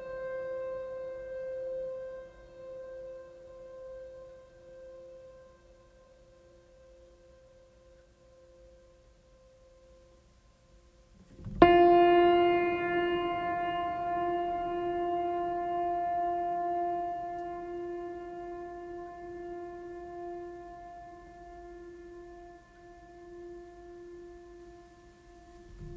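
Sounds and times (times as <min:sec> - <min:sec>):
ambient music chords: 0:11.6 - 0:25.9.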